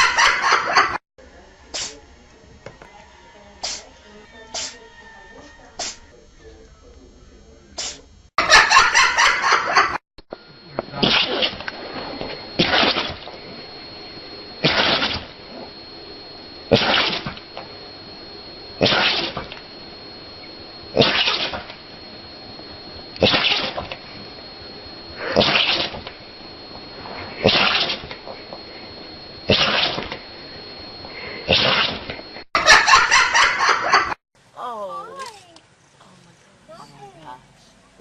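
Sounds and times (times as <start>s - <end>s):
animal sneezing: 1.7s - 2.0s, 3.6s - 3.9s, 4.5s - 4.8s, 5.8s - 6.0s, 7.8s - 8.1s, 14.6s - 15.2s, 18.8s - 19.3s.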